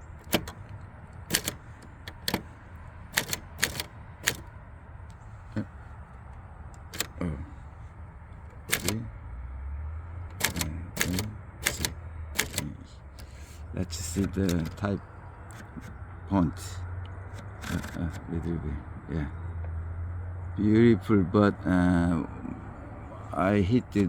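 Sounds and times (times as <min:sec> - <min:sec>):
typewriter key strikes: 0:00.0 - 0:04.6, 0:06.8 - 0:07.3, 0:08.4 - 0:09.1, 0:10.3 - 0:13.4, 0:14.1 - 0:14.9, 0:15.5 - 0:16.0, 0:17.2 - 0:18.2.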